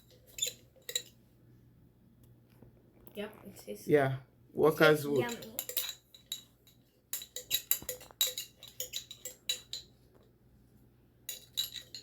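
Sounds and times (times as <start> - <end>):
spoon clinking against dish: 0.0 - 1.2, 5.2 - 10.0, 11.3 - 12.0.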